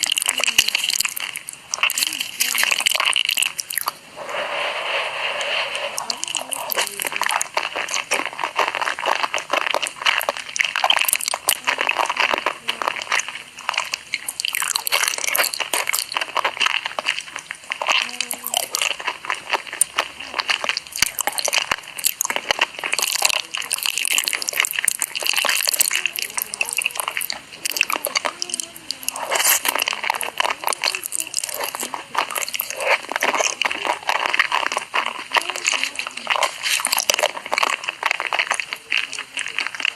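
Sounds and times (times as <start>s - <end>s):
crunchy bites: 0.0s - 4.0s, 5.9s - 39.9s
slurping: 0.0s - 39.9s
wet chewing: 0.0s - 39.9s.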